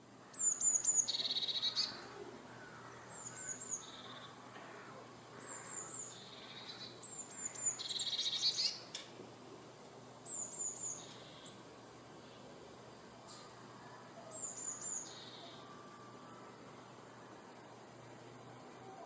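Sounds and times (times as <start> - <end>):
buzzy bird trill: 14.2 - 16.5.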